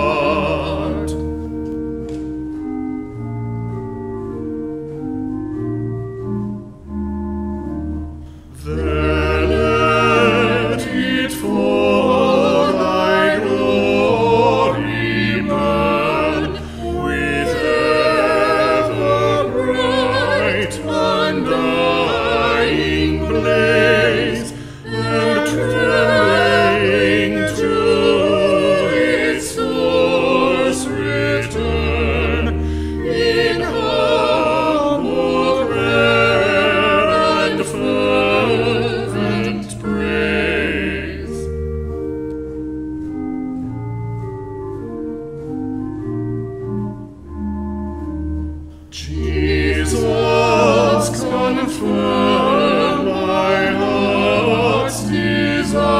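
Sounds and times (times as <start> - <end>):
choir singing: 0.0 - 1.4, 8.6 - 41.7, 48.9 - 55.9
organ chords: 0.0 - 55.9.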